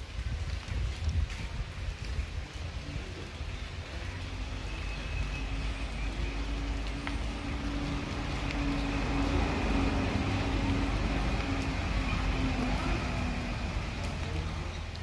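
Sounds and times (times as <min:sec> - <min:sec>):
vehicle engine hum: 0:03.8 - 0:15.0.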